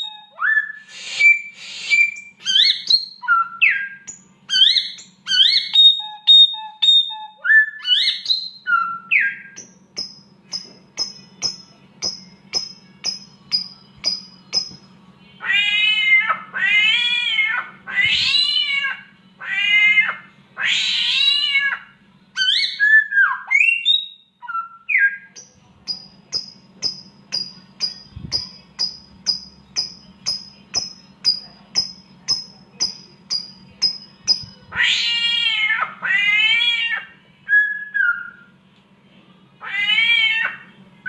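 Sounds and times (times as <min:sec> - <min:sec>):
faint low hum: 0:00.0 - 0:41.0
bird imitating cat meows: 0:15.4 - 0:21.9, 0:34.7 - 0:37.1, 0:39.6 - 0:40.6.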